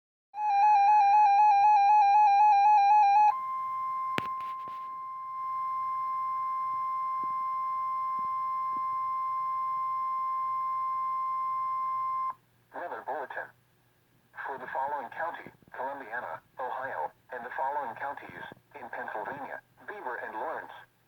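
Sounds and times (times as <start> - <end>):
steady warning alarm tone: 0.4 - 12.4
warbling electronic alarm beep: 0.4 - 12.4.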